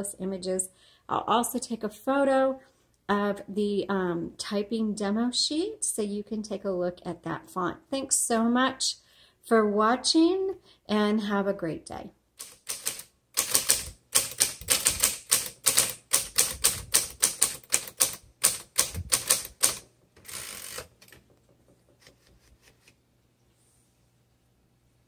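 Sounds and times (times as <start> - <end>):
typewriter carriage rasp: 12.4 - 21.2
typewriter key strikes: 12.4 - 21.3.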